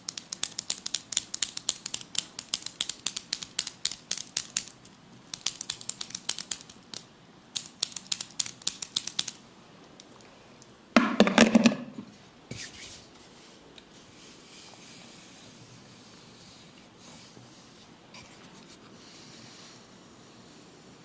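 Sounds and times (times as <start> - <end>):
crisp clicks of massage: 0.0 - 10.7.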